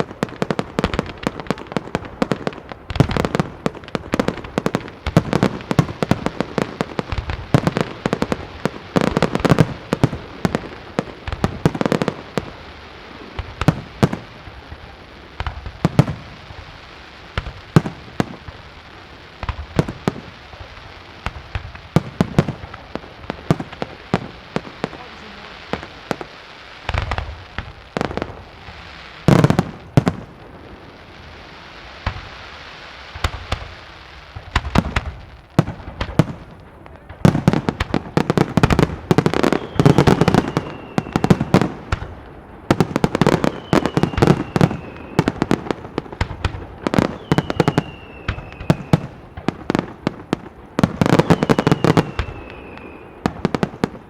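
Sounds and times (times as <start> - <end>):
fireworks bursting: 0.0 - 54.0
falling whistles: 39.3 - 41.5, 43.4 - 45.4, 47.1 - 49.0, 51.0 - 53.3.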